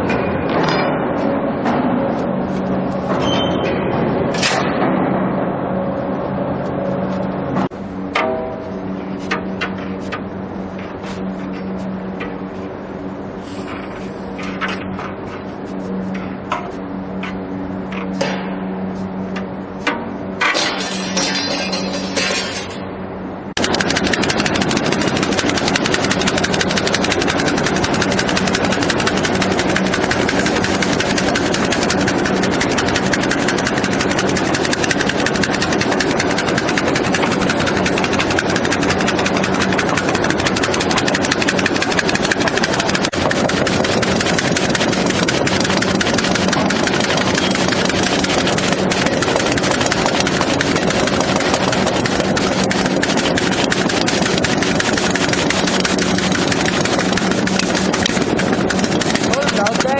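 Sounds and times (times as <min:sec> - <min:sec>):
industrial machine hum: 0:00.0 - 0:59.9
fast machine rattle: 0:23.6 - 0:59.9.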